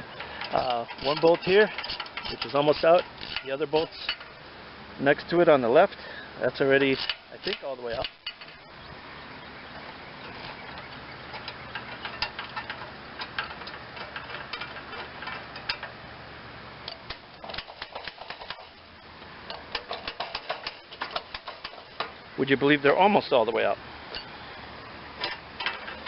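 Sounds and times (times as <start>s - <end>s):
steady hiss: 0.0s - 26.0s
ratchet wrench clicking: 0.1s - 4.3s, 19.5s - 22.2s.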